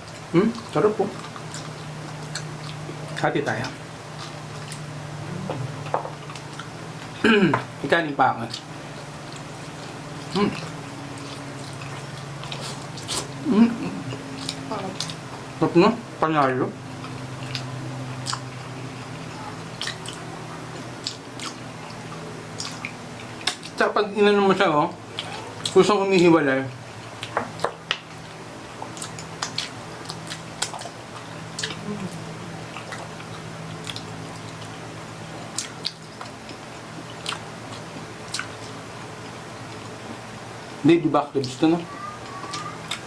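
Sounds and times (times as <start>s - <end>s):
close-up chewing: 0.0s - 7.2s, 8.5s - 15.6s, 16.9s - 23.8s, 26.9s - 40.2s, 41.4s - 43.0s
steady low hum: 0.0s - 43.0s
wet mouth clicks and smacks: 19.8s - 20.2s, 22.6s - 23.8s, 28.8s - 30.9s, 32.8s - 34.7s, 35.5s - 36.3s, 37.2s - 37.4s, 38.3s - 38.6s
wet mouth smacks and clicks: 19.8s - 20.2s, 37.2s - 37.4s.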